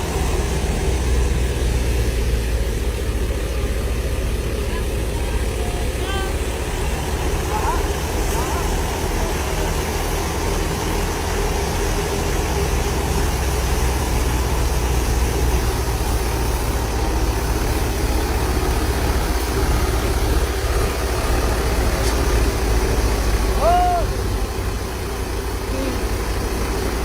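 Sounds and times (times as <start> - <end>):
machine engine droning: 0.0 - 27.0.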